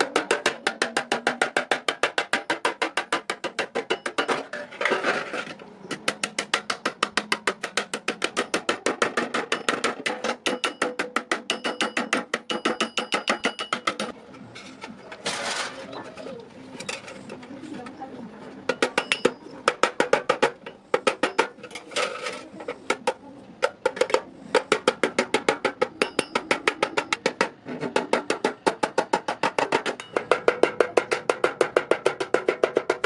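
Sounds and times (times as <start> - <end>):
hammer striking iron on anvil: 6.0 - 14.1, 24.6 - 27.4, 28.2 - 33.0.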